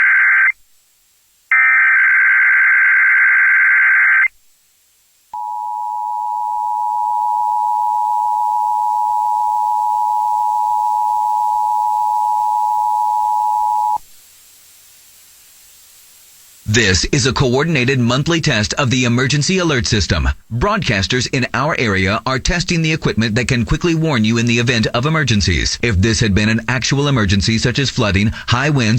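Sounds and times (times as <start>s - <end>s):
two-tone attention signal: 5.4s - 14.0s.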